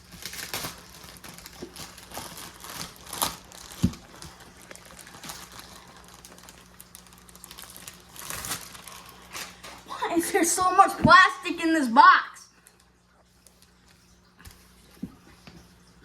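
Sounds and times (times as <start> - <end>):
plastic packaging crinkling: 0.0 - 9.9, 12.5 - 14.9.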